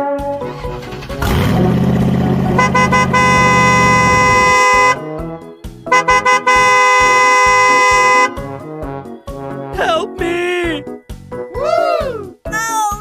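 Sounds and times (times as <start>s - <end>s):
low engine rumble: 0.3s - 5.0s
vehicle horn honks: 2.4s - 5.1s, 5.9s - 8.6s.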